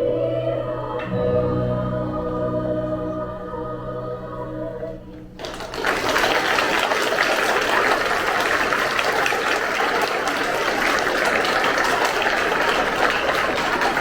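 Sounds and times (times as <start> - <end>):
audience applause: 5.4 - 14.0.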